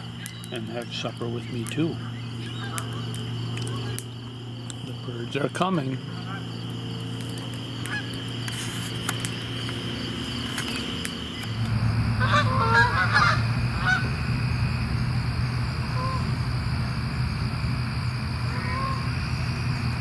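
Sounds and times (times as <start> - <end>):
crickets chirping: 0.0 - 20.0
geese honking: 1.9 - 4.0, 6.0 - 6.6, 7.4 - 9.0, 10.2 - 20.0
low steady rumble: 11.2 - 20.0.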